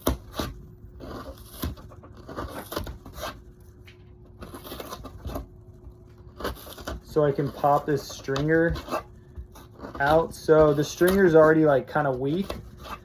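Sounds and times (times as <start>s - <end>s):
tool scratching foam: 0.0s - 3.6s, 6.3s - 13.0s.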